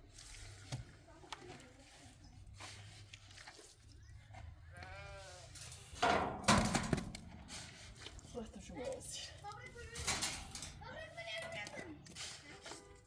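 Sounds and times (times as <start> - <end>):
sheep or goat bleating: 4.7 - 5.5.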